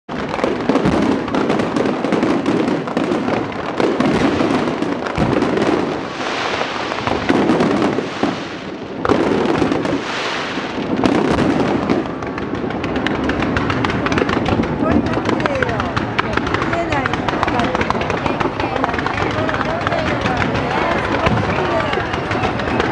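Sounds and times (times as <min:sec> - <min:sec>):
fireworks crackling and banging: 0:00.1 - 0:22.9
hissing crackle: 0:12.2 - 0:20.5.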